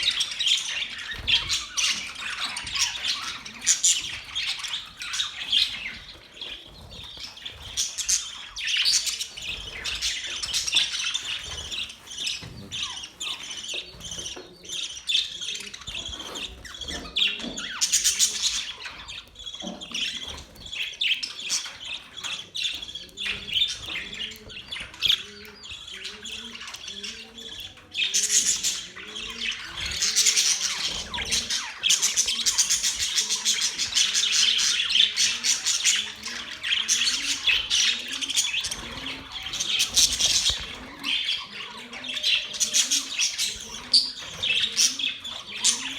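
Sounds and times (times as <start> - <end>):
budgerigars chirping and warbling: 0.0 - 45.9
bird squawks: 28.1 - 45.9.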